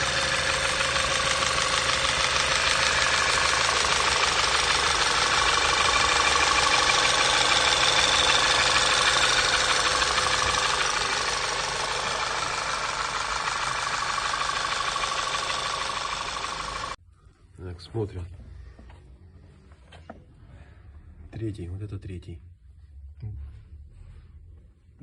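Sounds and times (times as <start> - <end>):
engine knocking: 0.0 - 17.0.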